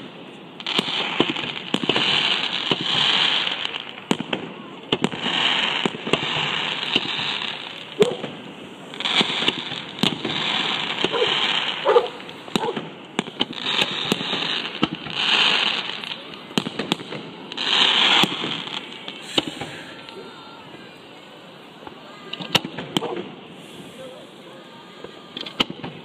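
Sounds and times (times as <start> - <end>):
firework crackling: 0.0 - 26.0
firework shells bursting: 4.1 - 20.3.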